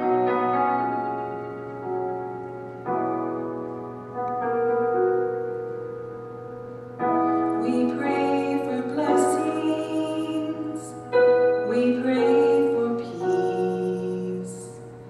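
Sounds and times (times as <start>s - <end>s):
piano chords: 0.0s - 15.0s
person singing a slow song: 7.5s - 15.0s.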